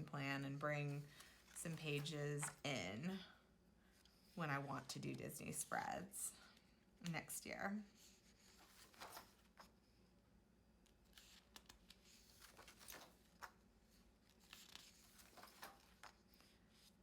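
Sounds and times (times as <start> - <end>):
paper pages turning: 8.3 - 9.7, 10.9 - 13.6, 14.2 - 16.9.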